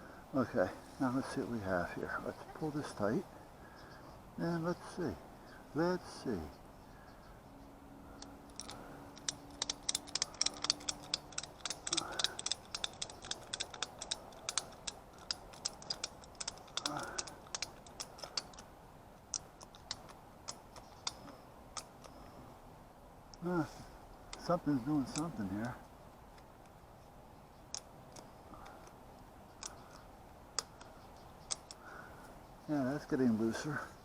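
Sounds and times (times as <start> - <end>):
ratchet strap pawl clicking: 8.2 - 18.7, 19.3 - 22.2, 27.7 - 31.8.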